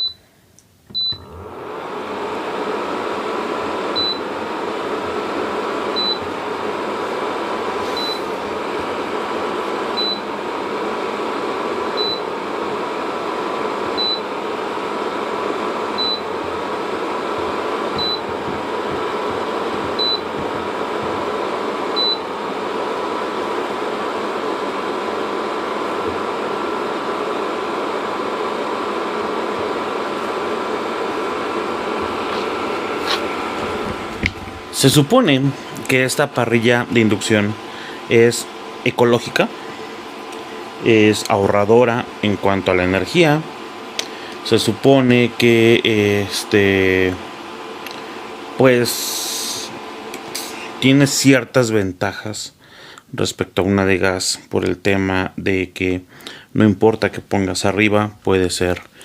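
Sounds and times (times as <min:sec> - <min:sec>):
cooktop beep: 0:00.0 - 0:00.2, 0:00.9 - 0:01.3, 0:06.0 - 0:06.3, 0:07.9 - 0:08.3, 0:12.0 - 0:12.3, 0:14.0 - 0:14.3, 0:16.0 - 0:16.3, 0:17.9 - 0:18.3, 0:19.9 - 0:20.4, 0:21.9 - 0:22.3
cooling fan running: 0:00.0 - 0:59.0.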